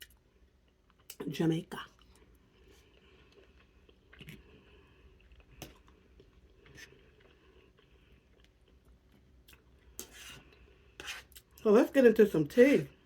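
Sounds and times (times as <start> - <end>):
chewing food: 0.0 - 1.2, 1.8 - 10.7.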